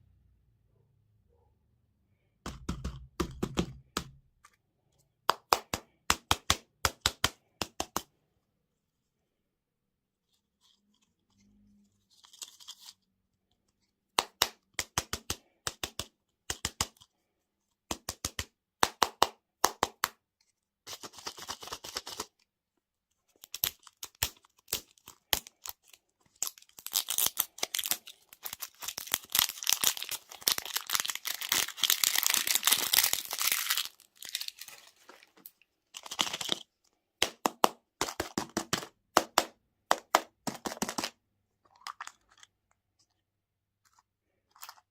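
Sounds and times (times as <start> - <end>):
plastic wrappers crinkling: 23.3 - 36.7.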